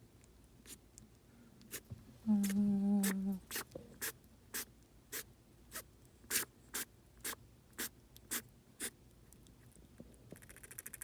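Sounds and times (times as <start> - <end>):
squirrel sneezing: 2.4 - 8.9.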